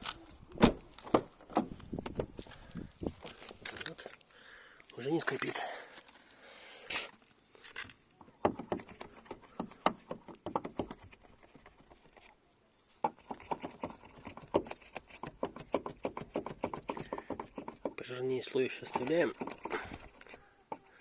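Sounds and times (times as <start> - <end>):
soap scraping on metal: 13.2 - 20.6.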